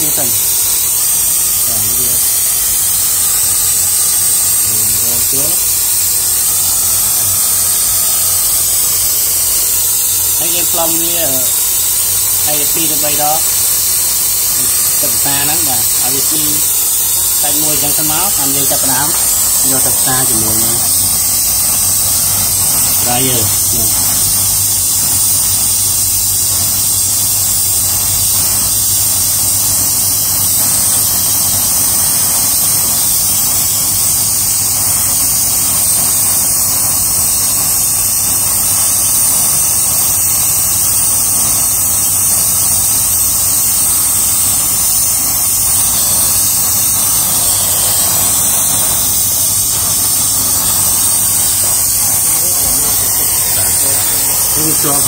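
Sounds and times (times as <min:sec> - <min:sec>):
torch flame hissing: 0:00.0 - 0:55.0.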